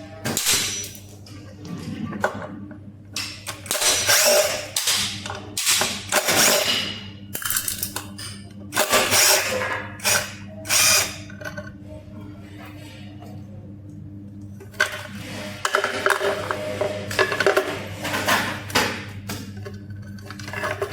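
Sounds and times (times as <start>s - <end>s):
steady low hum: 0.0s - 20.9s.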